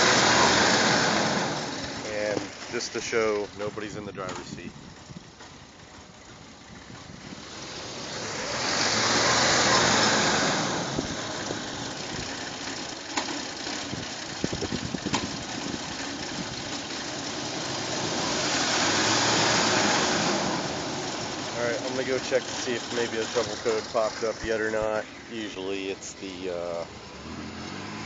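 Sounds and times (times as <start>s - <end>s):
engine idling roughly: 11.0s - 18.1s, 20.7s - 26.6s.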